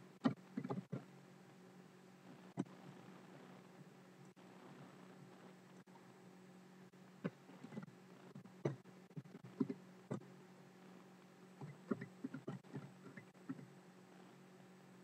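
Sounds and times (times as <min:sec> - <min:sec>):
low electrical hum: 0:00.0 - 0:15.0
keyboard and mouse clicks: 0:00.2 - 0:01.1, 0:08.6 - 0:10.2, 0:11.6 - 0:13.7.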